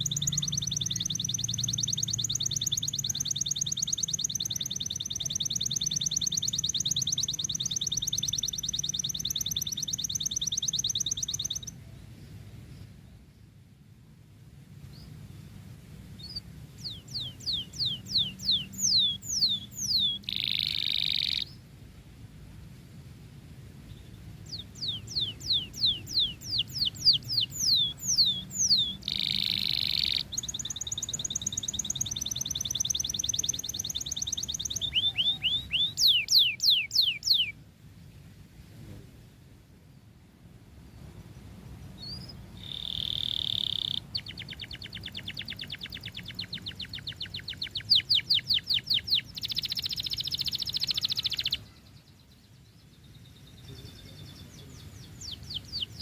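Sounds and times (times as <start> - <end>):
canary singing: 0.0 - 11.8, 16.1 - 21.6, 23.9 - 37.6, 41.8 - 56.0.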